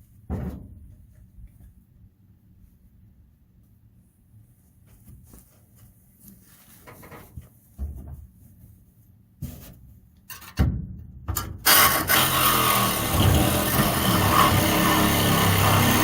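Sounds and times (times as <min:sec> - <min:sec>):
quiet handling sounds: 0:00.0 - 0:10.4
air chisel running: 0:11.7 - 0:16.0.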